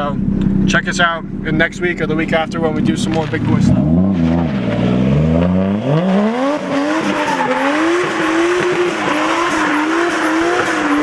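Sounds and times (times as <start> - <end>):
car engine revving: 0.0 - 11.0
tires squealing: 2.7 - 11.0.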